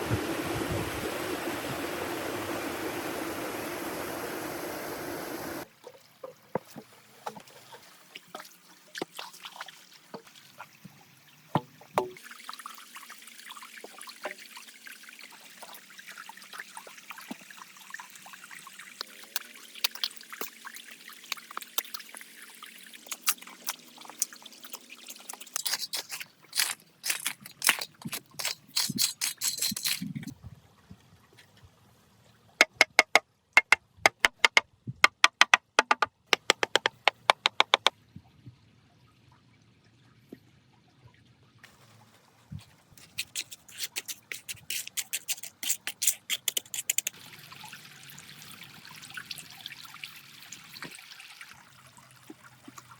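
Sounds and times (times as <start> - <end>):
water flowing: 0.0 - 30.4, 41.7 - 52.9
water trickling: 5.6 - 31.2, 41.7 - 52.9
water drips: 5.8 - 30.3, 42.6 - 52.9.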